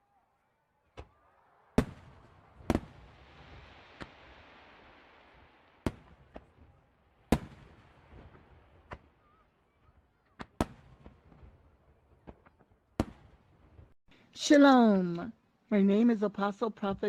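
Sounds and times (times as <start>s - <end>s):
fireworks bangs: 0.9s - 14.0s
fireworks hiss: 1.8s - 9.0s.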